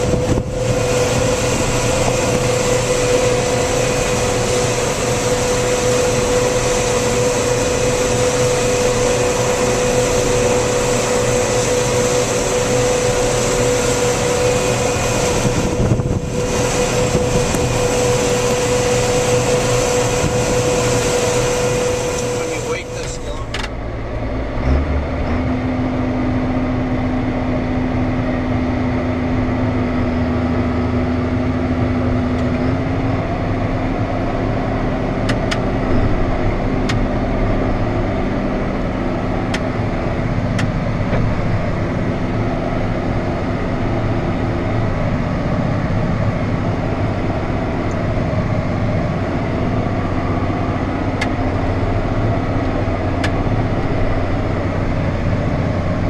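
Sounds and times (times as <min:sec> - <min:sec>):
higher hum: 0:00.0 - 0:24.5
diesel engine droning under load: 0:00.0 - 0:56.0.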